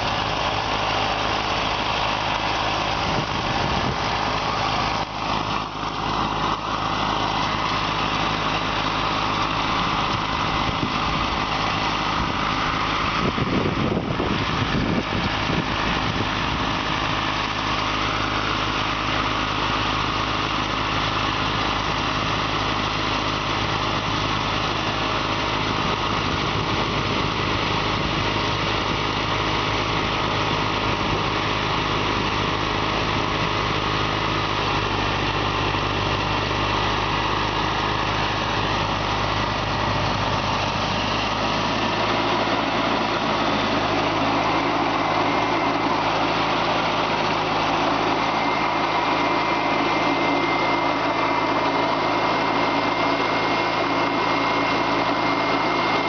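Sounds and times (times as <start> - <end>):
garden tractor engine running: 0.0 - 56.0.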